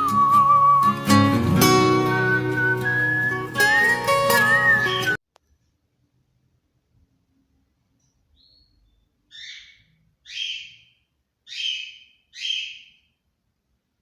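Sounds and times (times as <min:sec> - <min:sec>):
bird harsh calls: 0:08.4 - 0:13.2.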